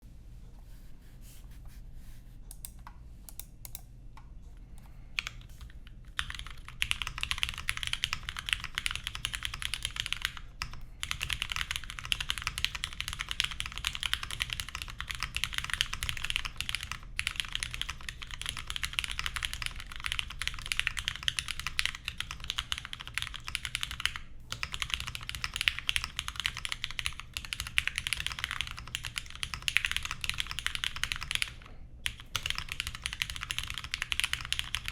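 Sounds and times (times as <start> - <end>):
typing on mechanical keyboard: 5.2 - 34.9.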